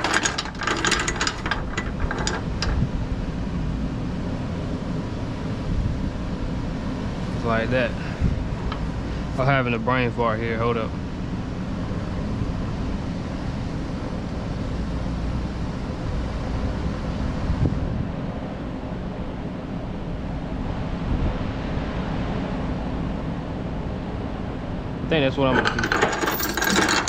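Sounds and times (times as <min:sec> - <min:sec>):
wind noise on microphone: 0:17.3 - 0:18.3.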